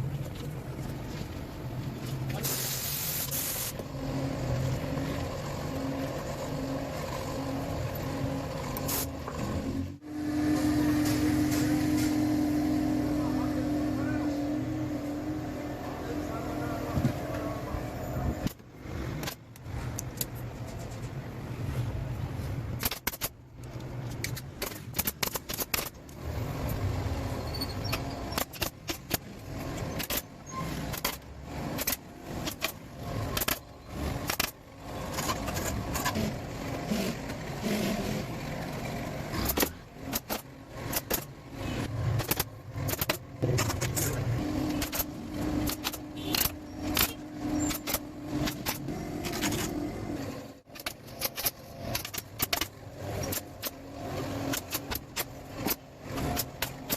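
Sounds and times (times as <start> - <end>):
steady hum: 0.0 - 18.8.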